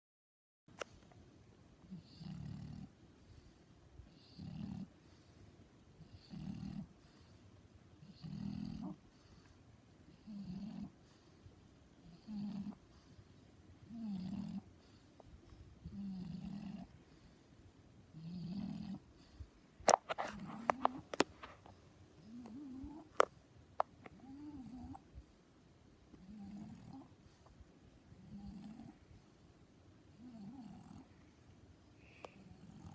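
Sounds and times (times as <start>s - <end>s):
dog snoring: 1.8s - 5.3s, 6.0s - 7.4s, 8.0s - 11.3s, 12.0s - 13.2s, 13.8s - 17.3s, 18.1s - 23.3s, 24.0s - 25.1s, 26.1s - 27.5s, 28.1s - 29.2s, 30.1s - 31.2s, 32.1s - 32.9s.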